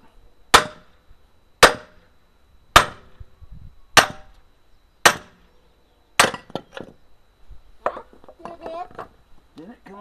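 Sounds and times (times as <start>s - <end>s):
hammer striking metal: 4.0s - 4.4s, 5.0s - 5.4s, 6.2s - 6.6s.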